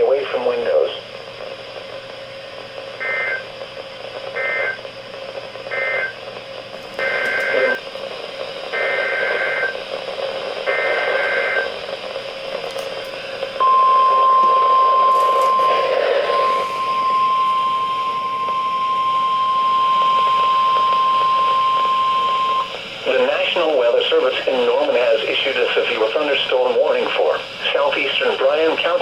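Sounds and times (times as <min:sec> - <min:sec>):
radio hiss: 0:00.0 - 0:29.0
steady warning alarm tone: 0:02.8 - 0:04.9, 0:05.6 - 0:06.3, 0:07.0 - 0:12.2, 0:13.0 - 0:25.6
two-tone warbling data bursts: 0:13.6 - 0:22.7.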